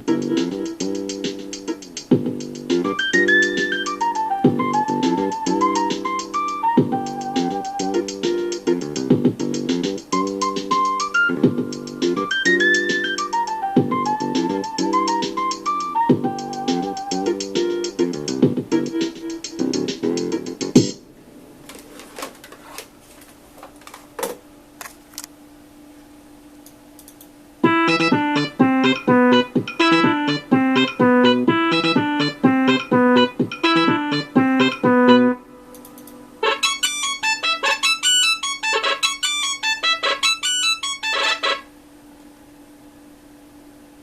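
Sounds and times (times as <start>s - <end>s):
synthesized ringtone melody: 2.8s - 8.2s, 10.4s - 17.9s, 27.6s - 35.4s, 36.4s - 41.6s
soft clicks: 26.6s - 27.3s, 35.7s - 36.2s.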